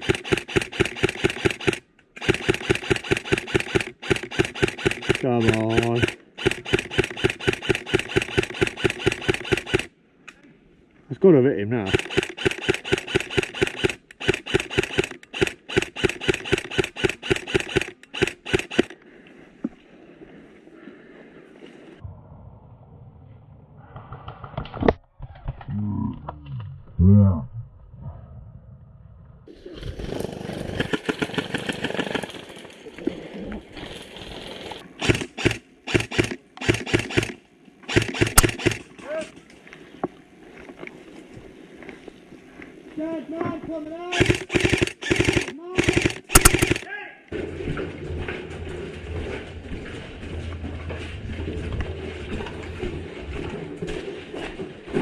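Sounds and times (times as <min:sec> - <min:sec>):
airsoft rifle firing single shots: 0:00.0 - 0:09.9, 0:11.8 - 0:19.0, 0:35.0 - 0:39.2, 0:44.1 - 0:46.9
lone click: 0:45.4 - 0:46.9.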